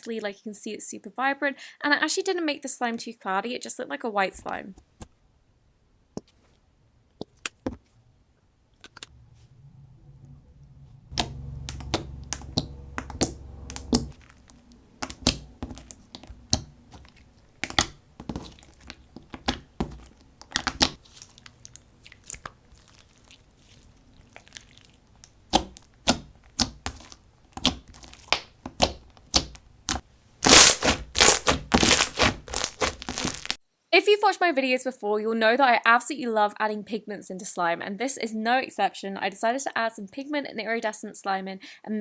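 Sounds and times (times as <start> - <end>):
slime clicking and popping: 11.2 - 23.1, 24.5 - 33.6.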